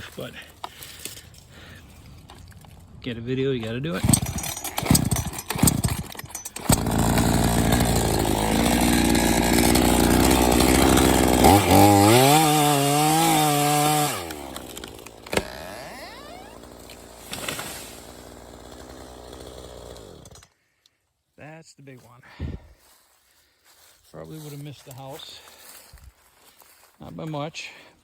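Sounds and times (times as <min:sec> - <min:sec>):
chainsaw cutting tree trunk: 0:04.0 - 0:20.5.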